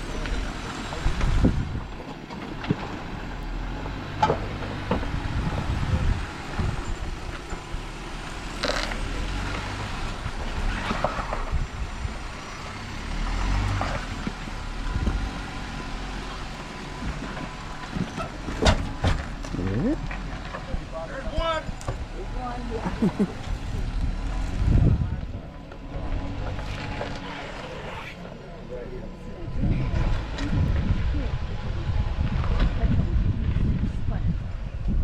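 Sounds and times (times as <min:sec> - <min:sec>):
off-road engine running low: 0:00.0 - 0:35.0.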